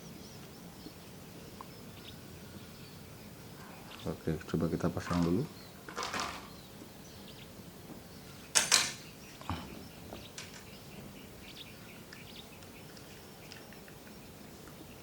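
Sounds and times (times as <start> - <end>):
metal bracket rattle and scrape: 8.5 - 9.0.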